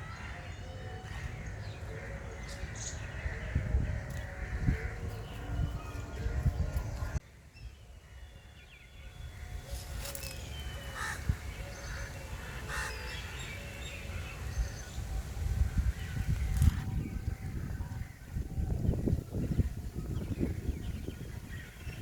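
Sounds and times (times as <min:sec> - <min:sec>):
crows cawing: 0:00.0 - 0:05.4, 0:10.8 - 0:14.4
small birds chirping: 0:00.0 - 0:22.0.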